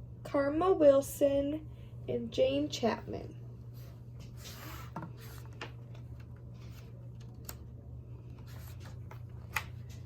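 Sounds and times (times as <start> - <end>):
steady low hum: 0.0 - 10.0
paper pages rustling: 4.2 - 7.6, 8.2 - 10.0.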